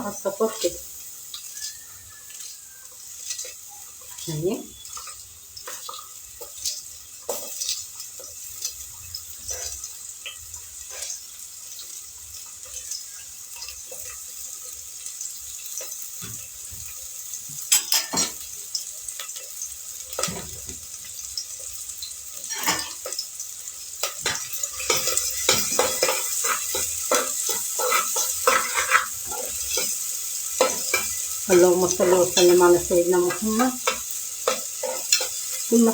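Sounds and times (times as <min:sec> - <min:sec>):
onion sizzling in a pot: 0:00.0 - 0:35.9
spoon scraping a pot: 0:22.4 - 0:23.1, 0:24.0 - 0:35.6.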